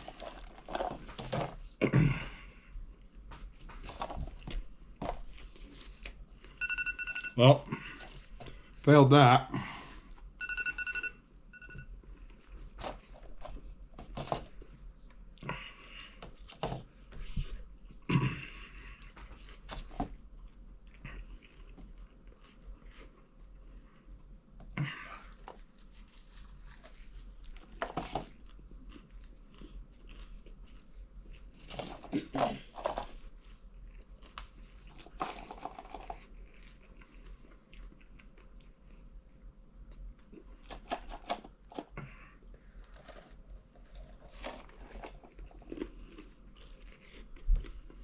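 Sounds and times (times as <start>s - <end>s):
person chewing crunchy popcorn: 0.0s - 6.6s, 15.4s - 23.8s, 25.0s - 39.2s, 39.9s - 48.0s.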